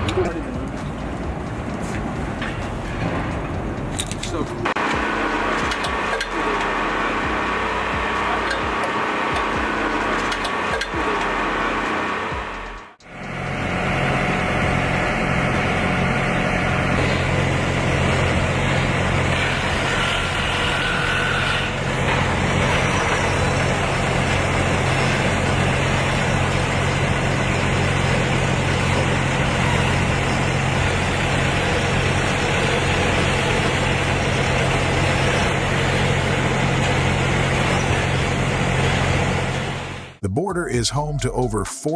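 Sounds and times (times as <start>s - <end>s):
heavy engine running: 0.0s - 41.9s.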